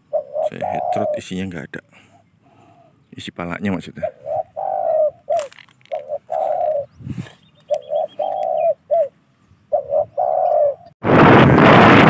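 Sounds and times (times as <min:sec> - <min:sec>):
dove cooing: 0:00.0 - 0:11.0
wind noise on microphone: 0:06.2 - 0:08.7, 0:09.5 - 0:12.0.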